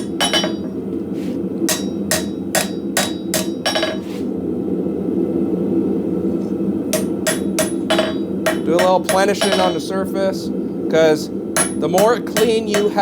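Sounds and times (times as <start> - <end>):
hammer ringing on anvil: 0.0 - 0.7, 1.7 - 4.0, 7.0 - 10.0, 11.6 - 13.0.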